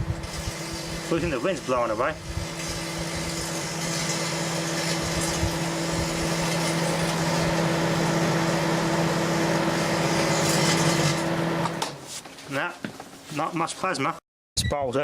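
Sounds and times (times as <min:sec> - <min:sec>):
microwave oven humming: 0:02.2 - 0:11.9.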